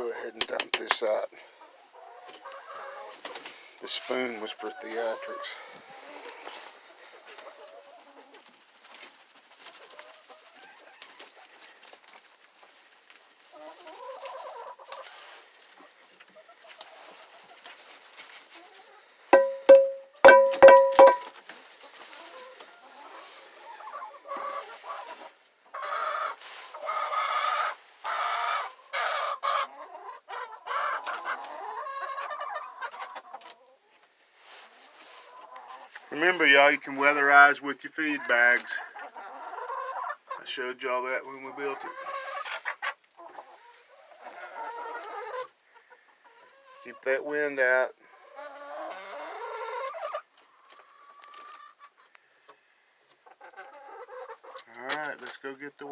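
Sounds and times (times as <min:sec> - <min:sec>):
hens clucking: 0:00.0 - 0:08.6, 0:09.6 - 0:34.1, 0:34.9 - 0:55.9
hens squawking: 0:03.8 - 0:06.4, 0:22.3 - 0:33.4, 0:41.4 - 0:47.1.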